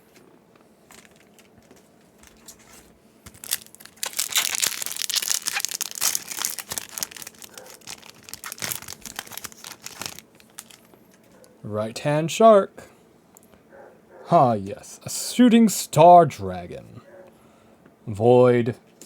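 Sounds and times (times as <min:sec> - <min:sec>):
foil wrapper tearing and crinkling: 0:00.9 - 0:11.0.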